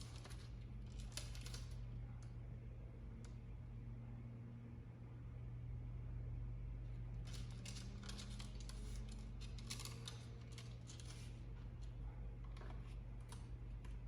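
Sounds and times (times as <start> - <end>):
faint clicking and scratching: 0.0 - 2.5, 6.9 - 14.0.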